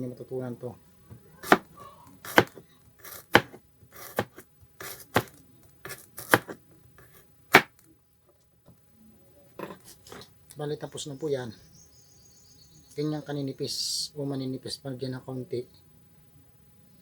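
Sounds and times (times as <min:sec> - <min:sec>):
knife knocking on cutting board: 0:01.4 - 0:01.7, 0:02.3 - 0:05.3, 0:05.9 - 0:07.7
knife slicing garlic: 0:01.4 - 0:07.7.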